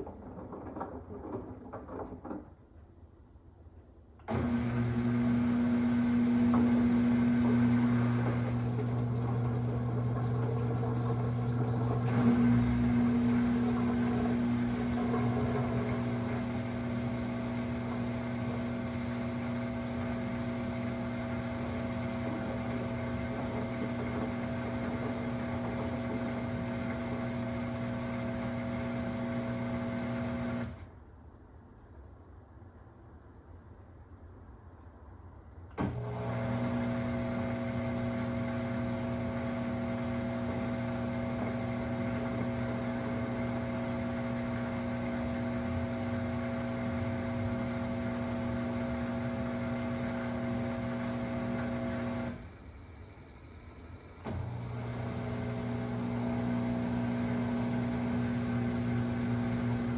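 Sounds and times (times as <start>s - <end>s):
washing machine buzzing: 4.2s - 30.8s, 35.8s - 59.9s.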